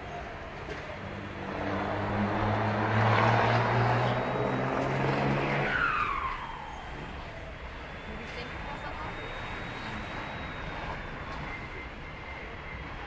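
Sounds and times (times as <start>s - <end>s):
car engine revving: 1.2s - 6.0s.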